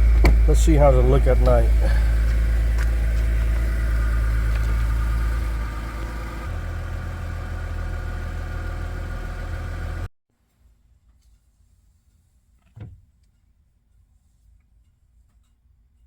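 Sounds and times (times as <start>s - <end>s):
car engine idling: 0.0s - 10.1s.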